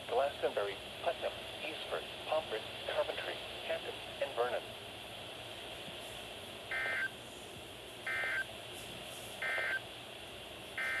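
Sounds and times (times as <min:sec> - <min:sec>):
buzzy two-tone data bursts: 0:06.7 - 0:07.1, 0:08.1 - 0:08.5, 0:09.4 - 0:09.8, 0:10.8 - 0:11.0.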